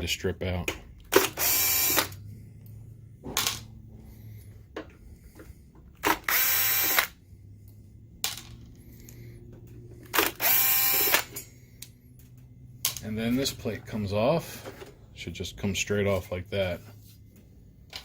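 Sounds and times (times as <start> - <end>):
screw gun motor whine: 1.1 - 2.2, 6.0 - 7.2, 10.1 - 11.4.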